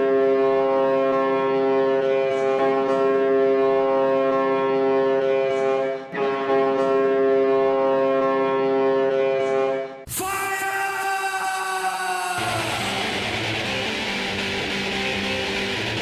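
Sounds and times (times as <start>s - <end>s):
goal horn blasts: 0.0s - 10.1s.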